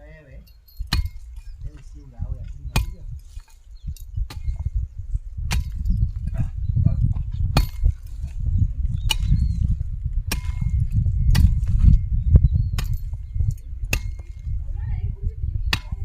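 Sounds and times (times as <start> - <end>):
low rumble: 0.0 - 16.0
hoe chopping into soil: 7.5 - 8.4.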